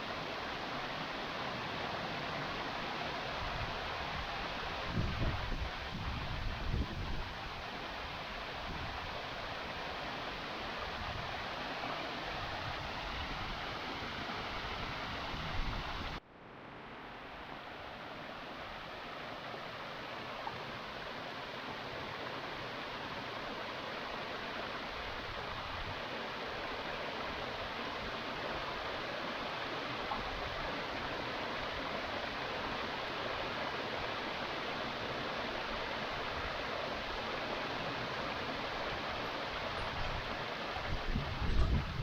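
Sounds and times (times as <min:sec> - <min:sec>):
waterfall rushing: 0:17.1 - 0:42.0.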